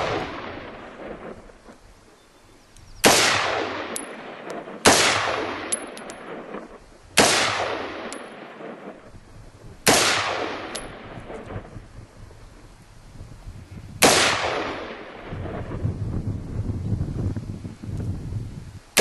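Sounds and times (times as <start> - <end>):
echoing gunshots: 0.0 - 1.8, 3.0 - 9.1, 9.8 - 11.8, 14.0 - 15.8.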